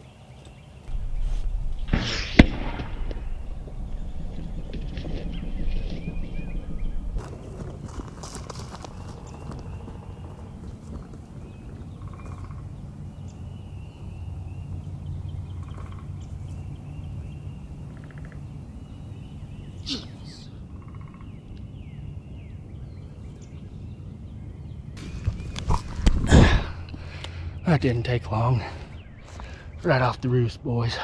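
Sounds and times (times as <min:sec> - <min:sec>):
sharp snap: 0:00.9 - 0:07.2
low steady rumble: 0:00.9 - 0:09.3.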